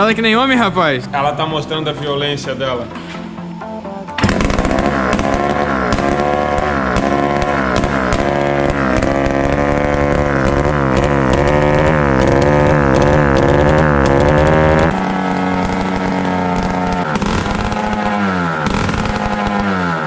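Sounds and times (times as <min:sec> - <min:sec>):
motorcycle engine revving: 0:04.2 - 0:20.0.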